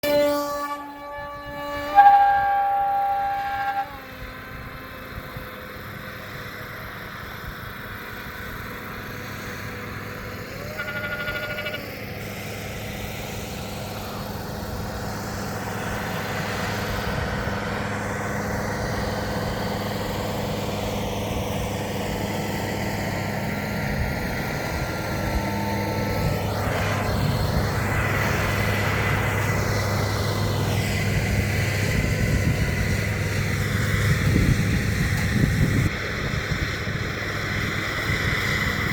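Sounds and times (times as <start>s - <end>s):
horn-like tones: 0.0s - 5.7s, 9.7s - 11.9s, 24.5s - 27.3s
vehicle engine whine and drone: 0.0s - 38.9s.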